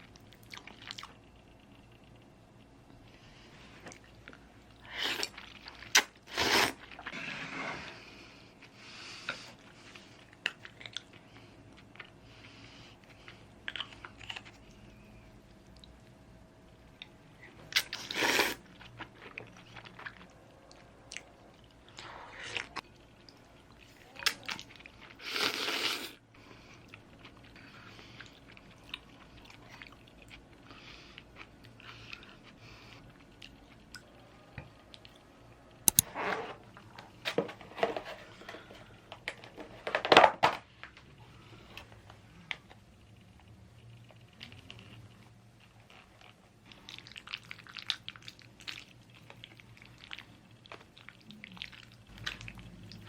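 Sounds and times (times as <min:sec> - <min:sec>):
person chewing noodles: 0:00.0 - 0:02.7, 0:08.6 - 0:35.3, 0:41.2 - 0:53.0.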